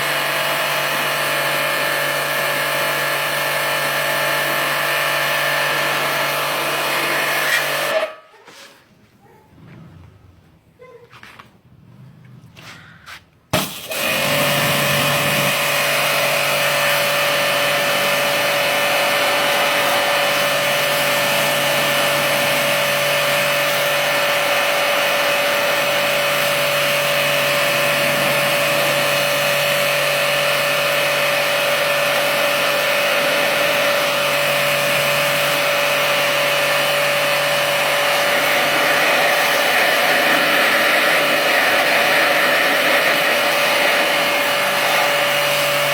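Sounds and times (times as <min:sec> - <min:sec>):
electric motor whirring and whining: 0:13.9 - 0:45.9.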